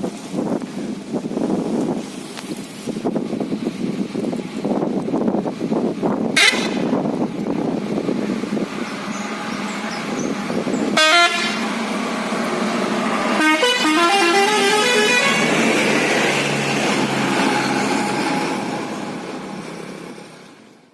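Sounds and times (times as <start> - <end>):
traffic noise: 0.0 - 20.9
bus horn trumpets: 6.4 - 7.0, 10.9 - 11.9, 13.3 - 15.8.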